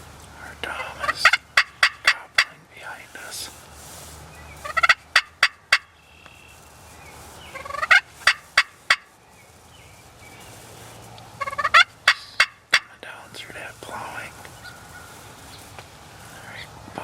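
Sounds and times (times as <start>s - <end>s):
turkey gobbling: 0.8s - 2.6s, 4.6s - 6.0s, 7.5s - 9.1s, 11.4s - 12.9s, 14.6s - 15.7s.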